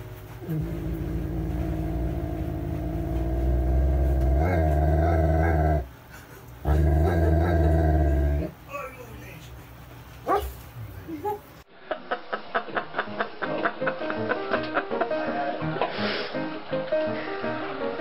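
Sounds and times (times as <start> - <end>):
dog growling: 0.4 - 5.9, 6.6 - 8.6.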